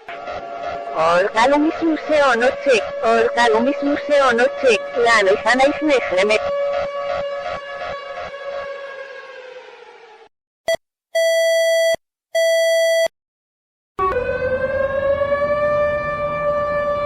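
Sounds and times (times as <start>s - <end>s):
reversed siren tone: 0.0s - 10.3s, 14.0s - 17.0s.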